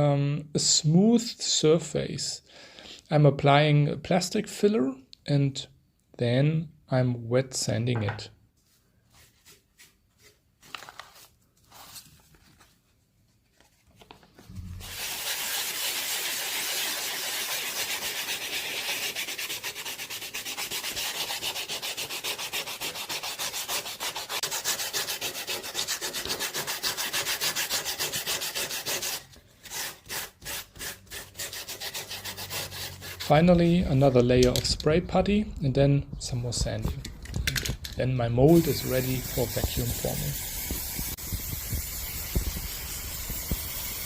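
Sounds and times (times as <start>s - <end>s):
sandpaper wet sanding: 14.8s - 34.1s, 38.4s - 44.0s.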